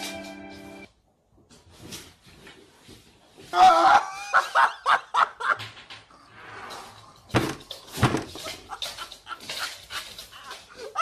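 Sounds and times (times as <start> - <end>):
person's stifled laughter: 8.4 - 11.0.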